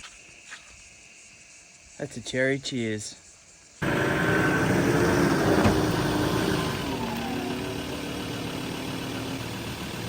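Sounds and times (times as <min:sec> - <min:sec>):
vehicle engine running: 0:03.8 - 0:10.0.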